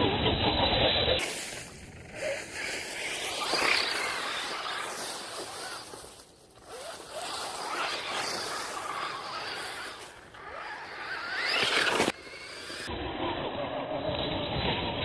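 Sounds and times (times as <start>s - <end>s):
tyres scrabbling on rough ground: 1.2s - 12.9s
electric motor whine: 2.0s - 13.1s.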